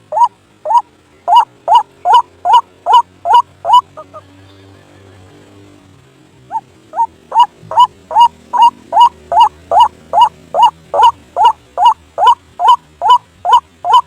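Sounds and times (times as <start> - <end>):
waterhen calling: 0.0 - 4.2, 6.5 - 14.0.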